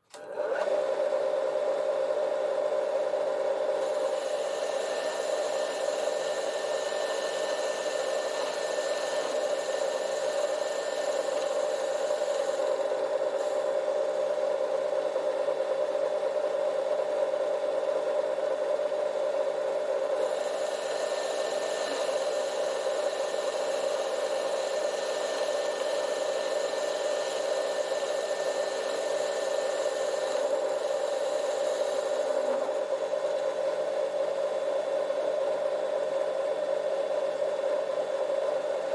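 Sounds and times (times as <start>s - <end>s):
metal lathe running: 2.7s - 35.8s.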